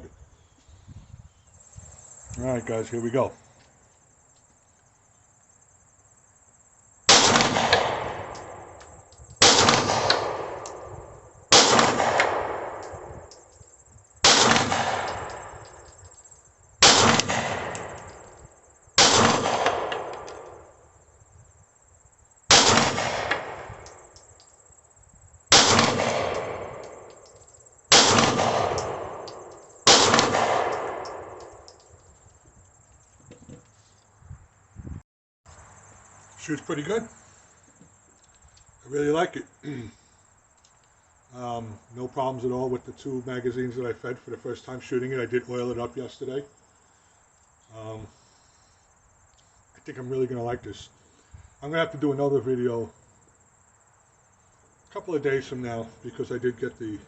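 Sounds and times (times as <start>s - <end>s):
pistol shots with echo: 7.1s - 8.7s, 9.4s - 13.3s, 14.2s - 15.8s, 16.8s - 18.2s, 19.0s - 20.6s, 22.5s - 24.0s, 25.5s - 27.2s, 27.9s - 31.7s.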